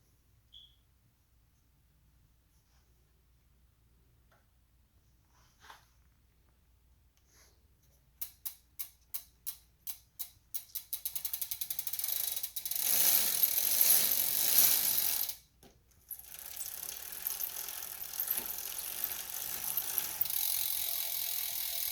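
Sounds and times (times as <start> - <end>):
bicycle freehub ratcheting: 8.2 - 15.4, 16.1 - 21.9.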